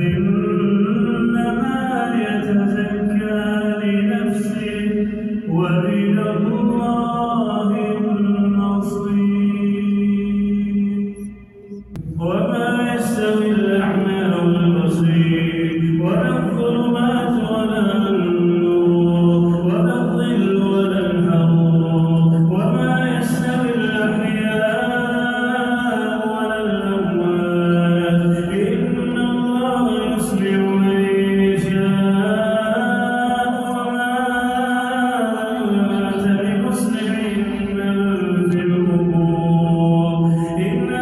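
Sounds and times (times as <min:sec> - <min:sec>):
man chanting melodically: 0:12.0 - 0:41.0.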